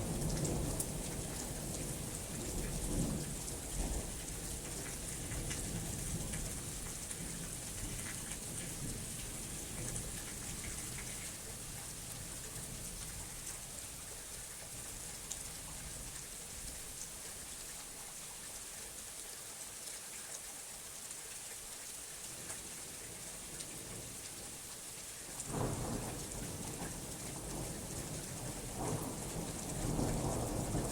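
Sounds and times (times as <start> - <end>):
steady rain falling: 0.0 - 30.9
low thunder rumble: 25.5 - 30.9.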